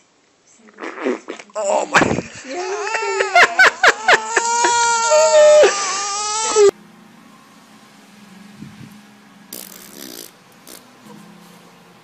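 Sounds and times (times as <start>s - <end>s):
baby crying loudly: 2.5s - 6.7s.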